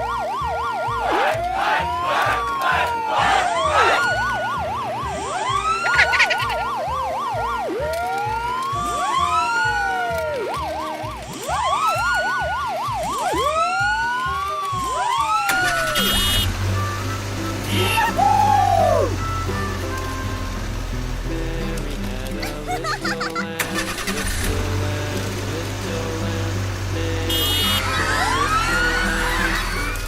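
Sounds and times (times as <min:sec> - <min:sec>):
emergency sirens wailing and yelping: 0:00.0 - 0:30.0
music with low beat: 0:16.4 - 0:30.0.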